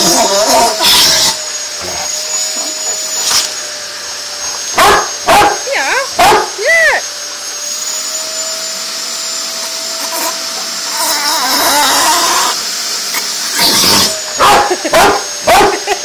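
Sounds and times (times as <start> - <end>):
vacuum cleaner whine: 0.0 - 16.0
dog barking: 4.8 - 5.6, 6.2 - 6.6, 14.4 - 15.8.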